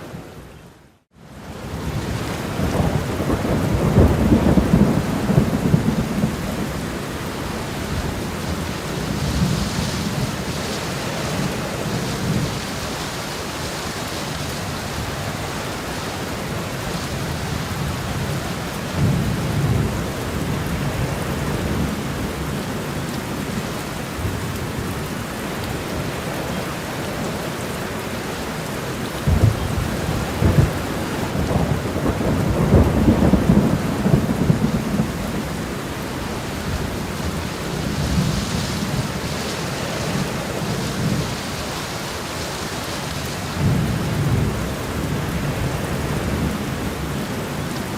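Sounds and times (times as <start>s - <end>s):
heavy rain: 0.0s - 47.9s
rolling thunder: 1.7s - 12.7s, 29.2s - 41.5s, 43.4s - 47.2s.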